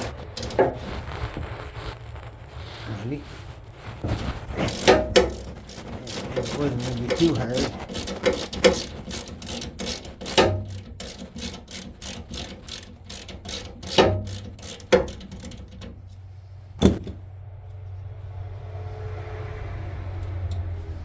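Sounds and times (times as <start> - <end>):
ratchet wrench clicking: 0.0 - 0.8, 4.6 - 16.0
metal knocks: 4.1 - 16.0, 16.8 - 17.2.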